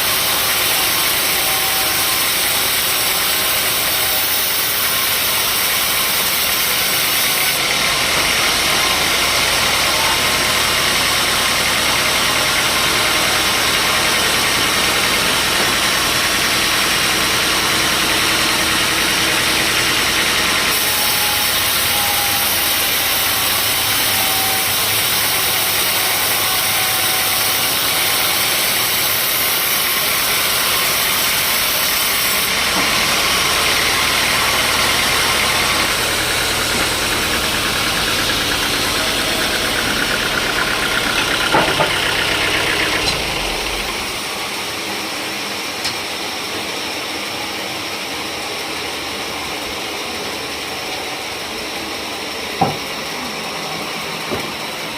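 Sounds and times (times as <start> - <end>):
sawmill machinery running: 0.0 - 54.9.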